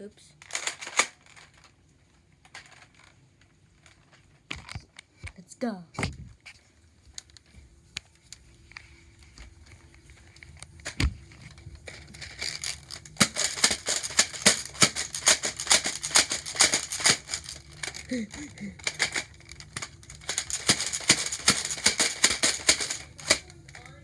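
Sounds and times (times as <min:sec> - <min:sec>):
fast rattle of hard clicks: 0:00.4 - 0:01.7, 0:10.5 - 0:24.0
scattered clicks: 0:09.3 - 0:23.9.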